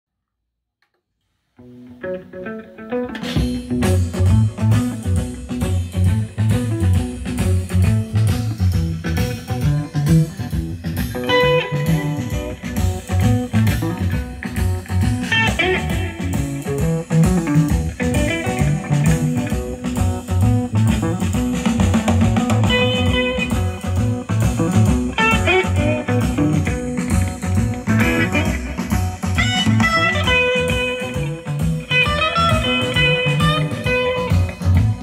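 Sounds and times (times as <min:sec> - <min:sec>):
blues guitar: 0:01.6 - 0:35.0
bass and drum beat: 0:03.2 - 0:35.0.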